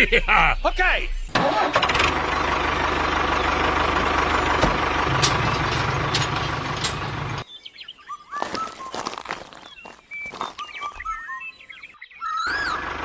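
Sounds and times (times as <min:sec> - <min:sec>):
small tractor engine putter: 0:01.3 - 0:07.4.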